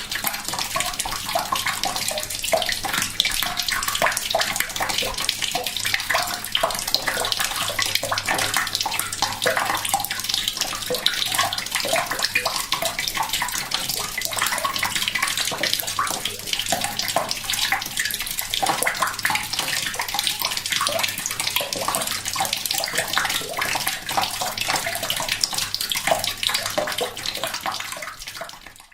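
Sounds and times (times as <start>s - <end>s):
tap water trickling into bucket: 0.0s - 28.9s.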